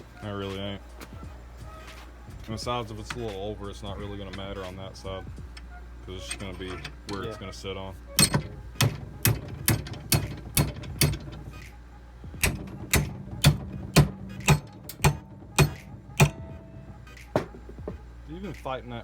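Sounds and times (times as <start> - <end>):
hammer blows on steel bracket: 8.2 - 11.7, 12.4 - 18.0.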